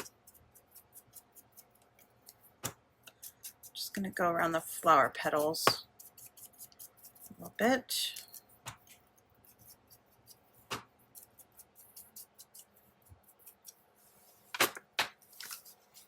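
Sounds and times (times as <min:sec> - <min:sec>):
scissors snipping paper: 0:00.0 - 0:02.4, 0:11.1 - 0:13.8.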